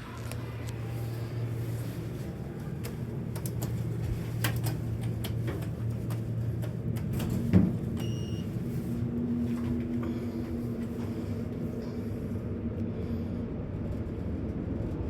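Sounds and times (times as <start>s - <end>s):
higher steady hum: 0.0s - 14.9s
elevator low hum: 0.0s - 15.0s.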